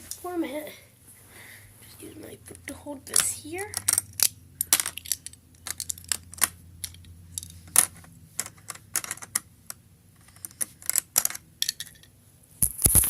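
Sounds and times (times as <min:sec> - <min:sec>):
plastic parts snapping together: 0:03.2 - 0:13.0.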